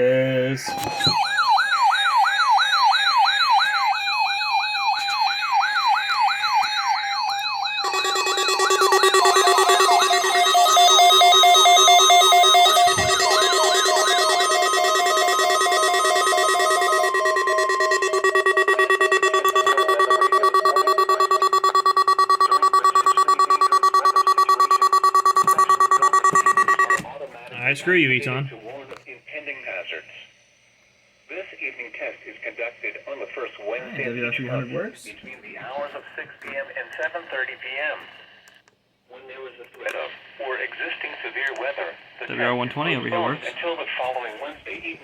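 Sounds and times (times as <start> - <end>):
fast beeping alarm: 0.6 - 27.1
warbling siren alarm: 0.7 - 27.1.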